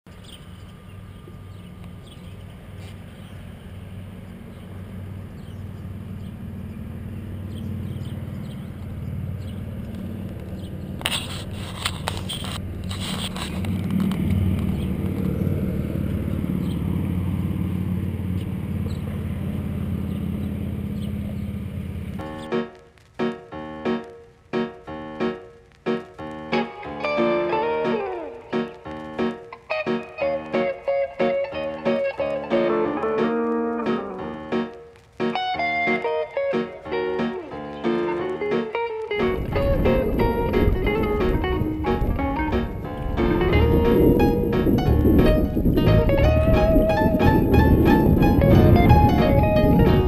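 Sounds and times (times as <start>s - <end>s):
outboard engine running: 3.4s - 22.2s.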